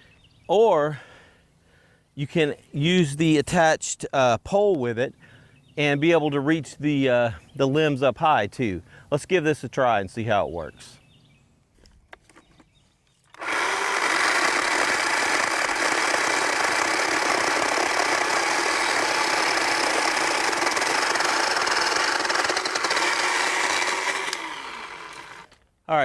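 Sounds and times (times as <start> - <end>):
electric chainsaw sawing wood: 13.3 - 25.6.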